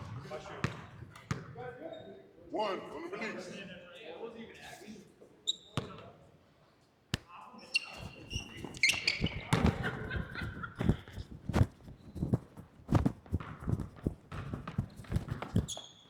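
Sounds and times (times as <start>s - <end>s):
basketball bouncing on court: 0.0s - 1.5s, 8.2s - 15.9s
shoe squeaks: 5.4s - 6.0s, 7.6s - 16.0s.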